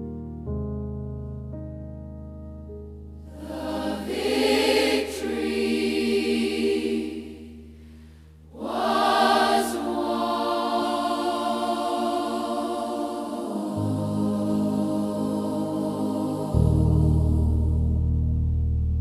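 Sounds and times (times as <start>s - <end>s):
gospel choir singing: 3.3s - 7.8s, 8.5s - 18.2s.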